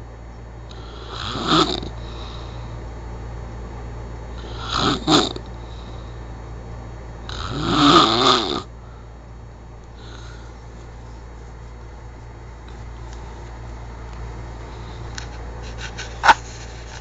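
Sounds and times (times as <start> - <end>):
person snoring loudly: 0.7 - 2.3, 4.4 - 5.4, 7.3 - 8.7, 10.0 - 10.5.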